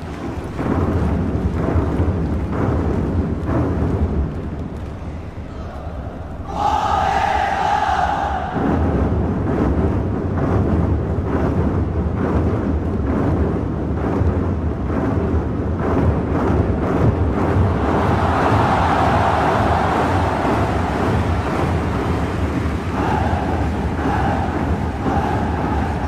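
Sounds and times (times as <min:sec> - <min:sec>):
massed drumming: 0:00.0 - 0:26.0.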